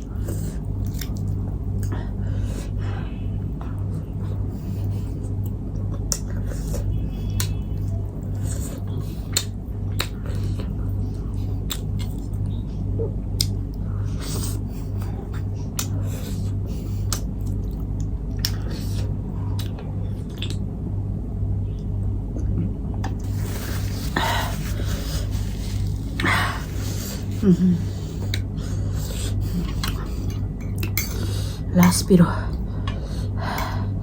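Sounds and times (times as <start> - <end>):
person chewing food: 0.0 - 2.8, 4.2 - 12.6, 13.3 - 20.6, 22.4 - 31.4
pulsing low hum: 0.0 - 34.0
wet mouth clicks and smacks: 9.3 - 10.2.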